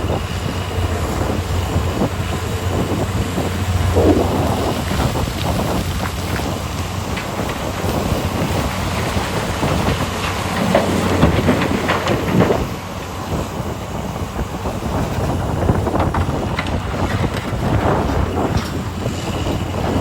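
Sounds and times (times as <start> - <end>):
heavy diesel engines rumbling: 0.0 - 20.0
clatter of rock and steel: 3.8 - 13.7, 15.0 - 20.0.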